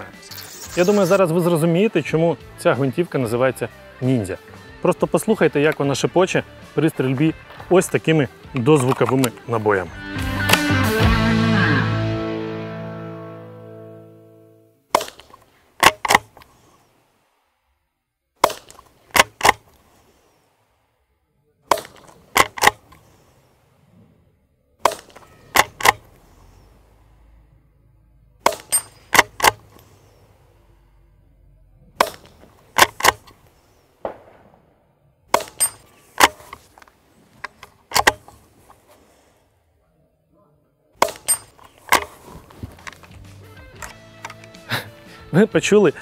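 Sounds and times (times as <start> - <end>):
suppressed gunshots: 14.9 - 16.7, 18.4 - 20.0, 24.8 - 26.6, 28.4 - 30.2, 32.0 - 36.8, 37.4 - 38.5, 41.0 - 43.0.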